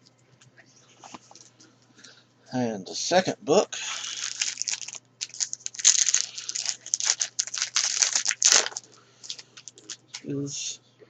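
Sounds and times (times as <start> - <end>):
wrapper crinkling and rustling: 3.9 - 10.2.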